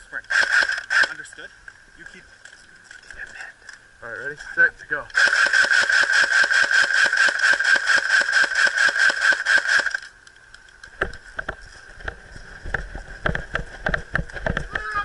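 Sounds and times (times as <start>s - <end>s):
airsoft gun full-auto burst: 0.3s - 1.2s, 5.2s - 10.1s.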